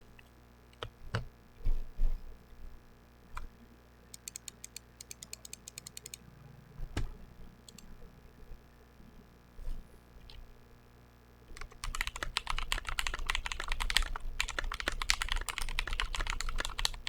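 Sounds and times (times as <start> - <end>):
mechanical keyboard keystrokes: 4.2 - 6.2, 11.6 - 17.0.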